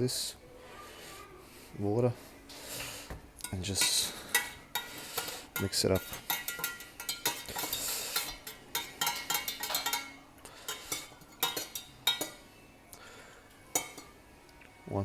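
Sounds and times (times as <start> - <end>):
spoon clinking against container: 3.4 - 12.5, 13.6 - 14.2.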